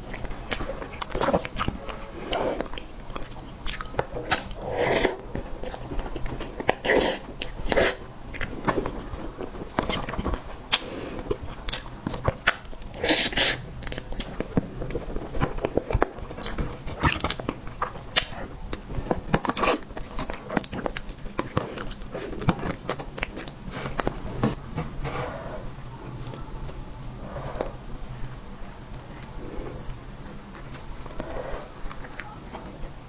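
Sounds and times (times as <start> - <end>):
person chewing with mouth clicks: 0.0 - 24.6.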